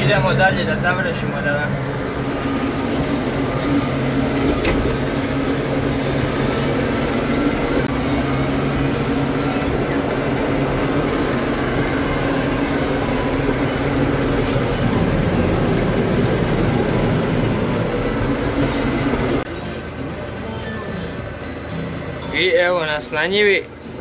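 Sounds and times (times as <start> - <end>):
tractor diesel engine running: 0.0 - 24.0.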